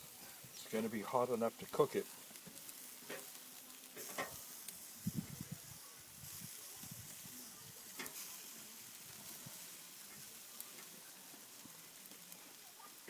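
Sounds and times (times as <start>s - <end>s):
chicken sizzling on a grill: 0.0s - 13.0s
wood fire crackles: 0.0s - 13.0s.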